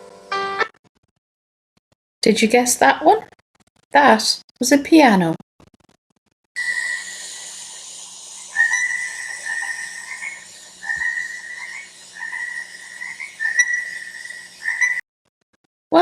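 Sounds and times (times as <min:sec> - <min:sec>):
frog calling: 0:06.6 - 0:15.0.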